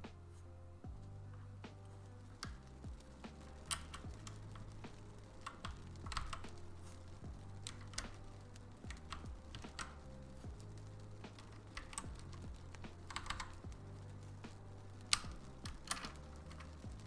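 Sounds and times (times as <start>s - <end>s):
mechanical keyboard clacking: 2.3s - 17.0s
sharp keyboard click: 2.4s - 13.8s.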